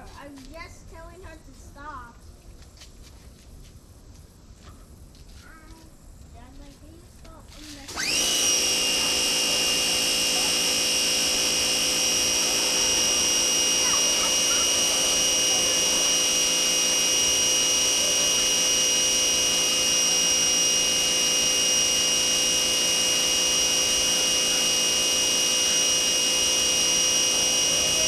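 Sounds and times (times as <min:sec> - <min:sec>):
pressure washer running: 0:07.6 - 0:28.0.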